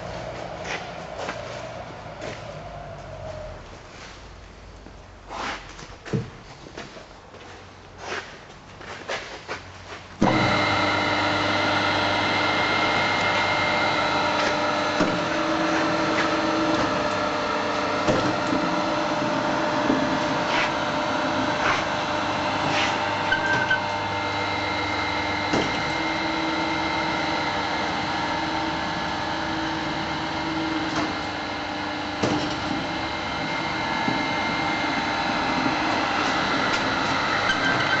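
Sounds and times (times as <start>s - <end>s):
knife grinder motor hum and whine: 10.2s - 38.0s.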